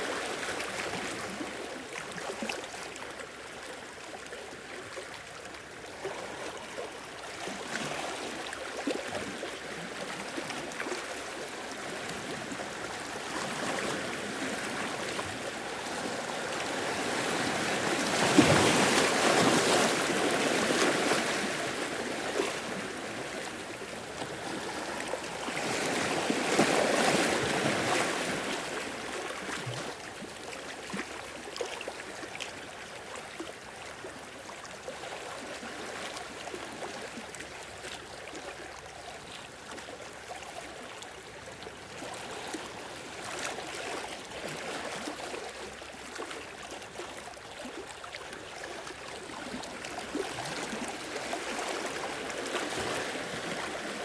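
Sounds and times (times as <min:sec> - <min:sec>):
sea waves washing on shore: 0:11.7 - 0:30.0.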